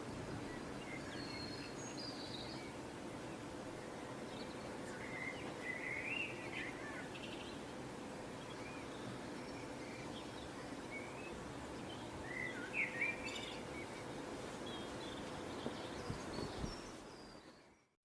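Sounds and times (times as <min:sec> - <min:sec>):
low background hiss: 0:00.0 - 0:18.0
bird chirps: 0:00.8 - 0:02.8, 0:08.4 - 0:17.9.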